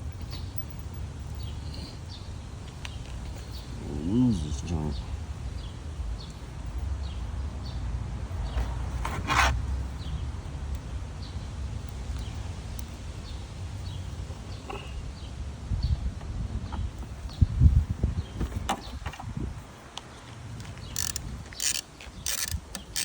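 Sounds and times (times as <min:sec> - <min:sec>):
plastic parts scraping: 0:20.7 - 0:23.0.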